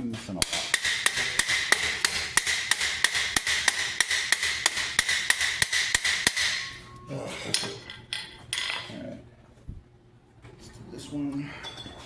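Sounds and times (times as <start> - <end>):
hammer on steel helmet: 0.4 - 6.9.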